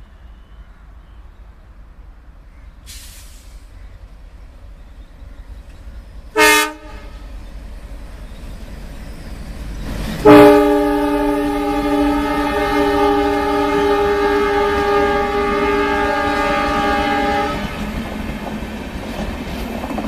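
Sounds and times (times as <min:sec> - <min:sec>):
diesel locomotive horn: 0:06.3 - 0:07.4, 0:10.2 - 0:18.1.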